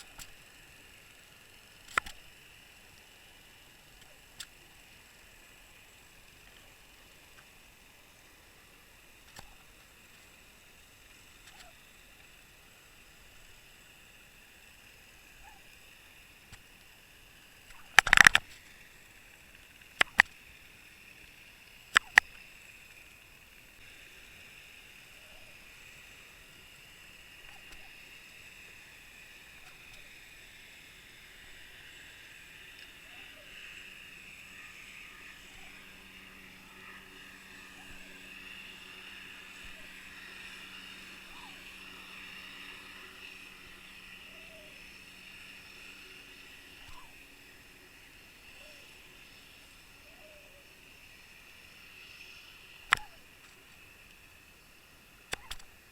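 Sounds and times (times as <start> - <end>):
faint steady hiss: 0.0 - 55.9
thin high whine: 0.0 - 55.9
sharp clicks: 1.8 - 2.3, 9.2 - 10.3, 11.3 - 11.8, 17.6 - 18.9, 19.6 - 20.7, 21.8 - 22.7, 52.8 - 54.2, 55.2 - 55.8.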